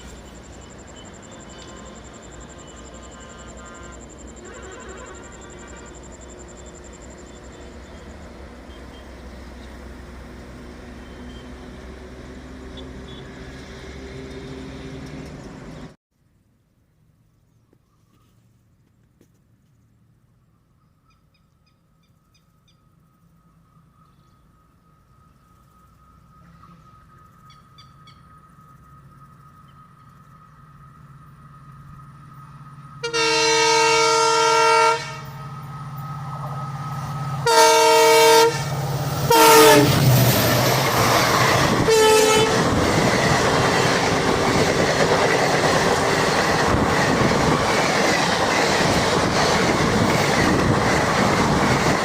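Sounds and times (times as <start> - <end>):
train wheels rumbling on rails: 0.0 - 16.0, 22.7 - 52.0
train horn blasts: 1.2 - 7.6, 12.6 - 15.0, 32.9 - 36.0, 37.3 - 40.2, 41.6 - 42.9.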